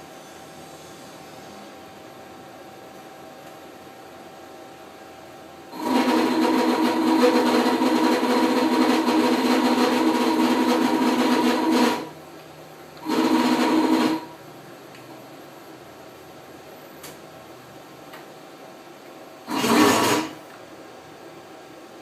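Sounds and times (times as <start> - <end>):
stepper motors whining: 19.5 - 20.4.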